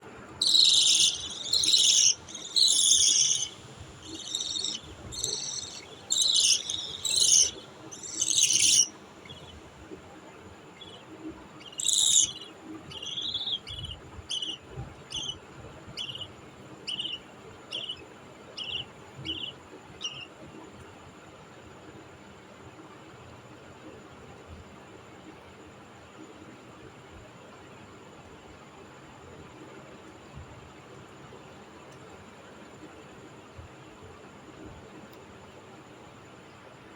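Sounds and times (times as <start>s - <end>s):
budgie chicks calling: 0.4s - 9.7s, 10.8s - 11.0s, 11.6s - 15.4s, 16.0s - 18.0s, 18.6s - 20.3s.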